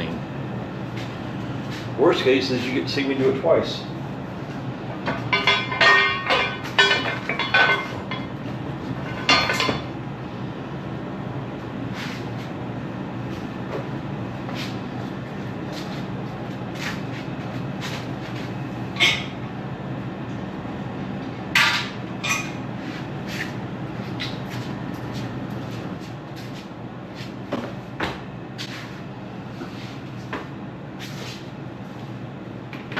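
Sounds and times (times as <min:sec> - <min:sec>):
steady low hum: 0:00.0 - 0:32.9.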